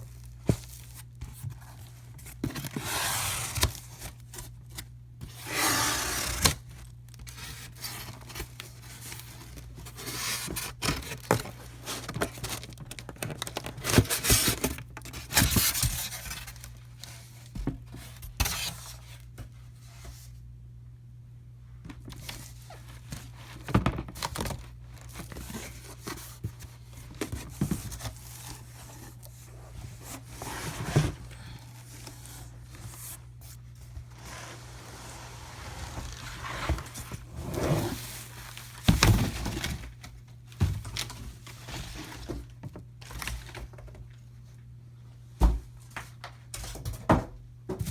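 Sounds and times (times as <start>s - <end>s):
packaging tearing and crinkling: 10.0s - 16.8s.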